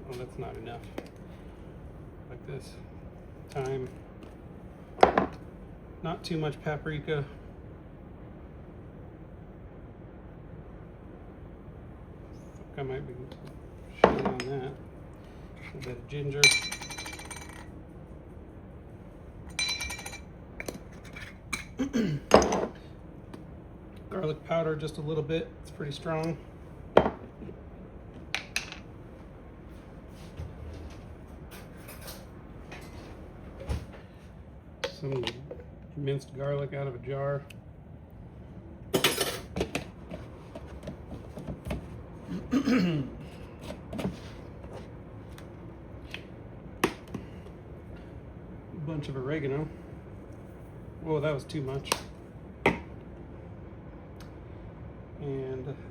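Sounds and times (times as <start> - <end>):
glass jars clinking and rattling: 16.4 - 17.7.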